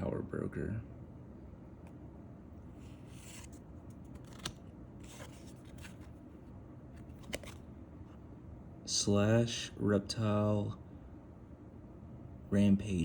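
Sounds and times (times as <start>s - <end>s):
cards sliding swishes: 2.7s - 8.2s.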